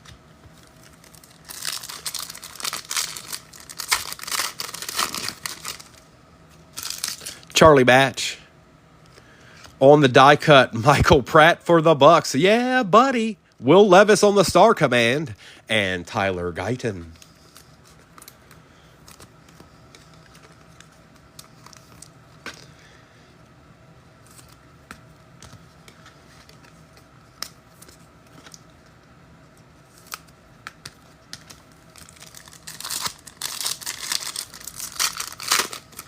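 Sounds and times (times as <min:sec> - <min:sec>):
wrapper crinkling and tearing: 0:00.5 - 0:06.0, 0:06.7 - 0:07.4, 0:31.3 - 0:36.0.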